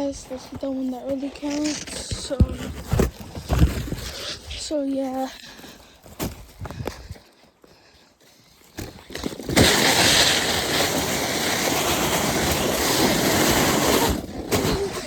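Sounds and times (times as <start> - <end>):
sled scraping over snow: 0.0 - 5.4, 8.8 - 15.0.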